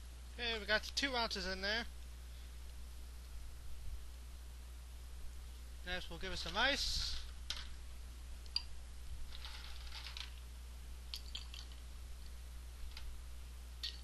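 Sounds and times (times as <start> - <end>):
ice cubes clinking in shaker: 9.3 - 10.4, 11.2 - 11.8.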